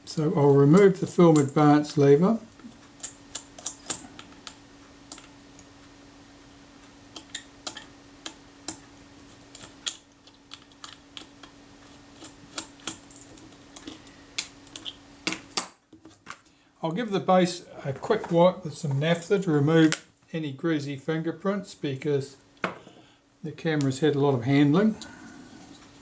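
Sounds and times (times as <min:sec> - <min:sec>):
faint steady hum: 0:00.0 - 0:26.0
small tools clicking on metal: 0:02.9 - 0:05.3.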